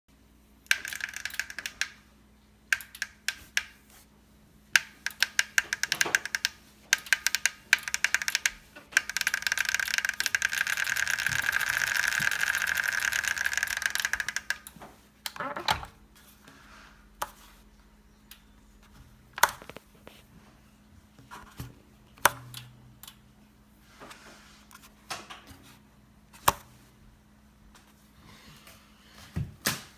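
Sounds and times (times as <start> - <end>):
bike trainer roller clicking: 0.7 - 2.0, 4.8 - 15.6.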